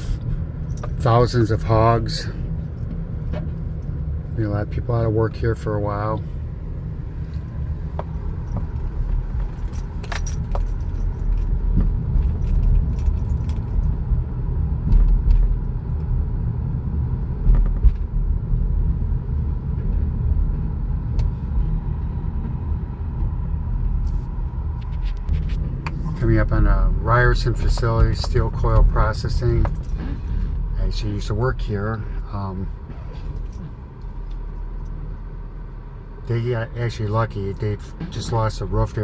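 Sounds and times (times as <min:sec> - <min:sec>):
car road noise rumble: 0:00.0 - 0:39.0
small rattles and clicks: 0:08.0 - 0:14.0.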